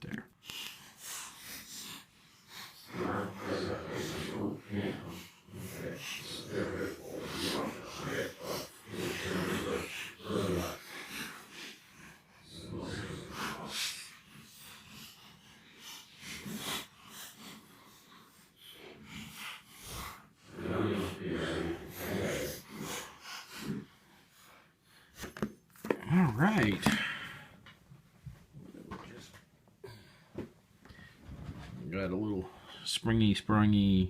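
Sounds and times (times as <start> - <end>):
person breathing hard through nose: 13.3 - 25.2, 26.8 - 27.7.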